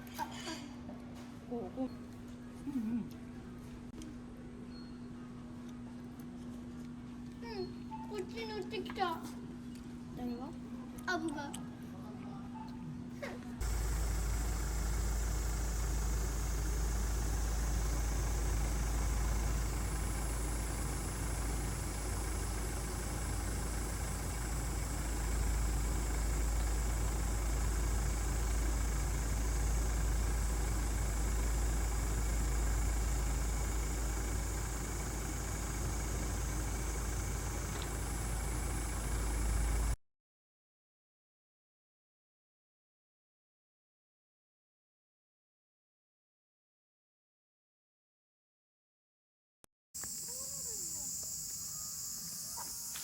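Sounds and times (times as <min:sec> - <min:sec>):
vehicle engine rumbling: 0:13.6 - 0:40.0.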